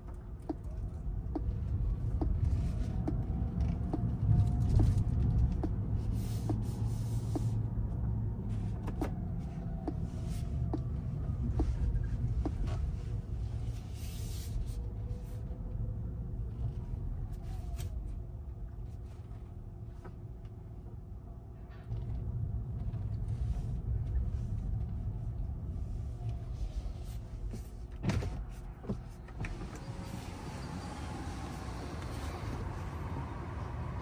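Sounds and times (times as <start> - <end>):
road and tyre rumble: 0.0 - 34.0.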